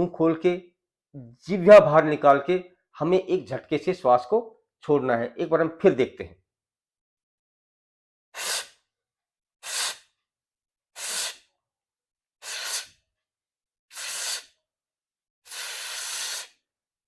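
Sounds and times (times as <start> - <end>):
man inhaling in hissing gulps: 12.4 - 12.9, 13.9 - 14.5, 15.5 - 16.6.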